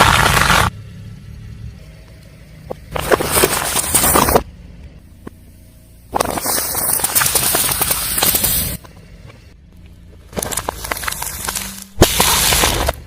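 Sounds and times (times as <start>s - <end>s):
car engine humming: 0.0s - 13.0s
tyre crushing objects: 10.2s - 13.0s.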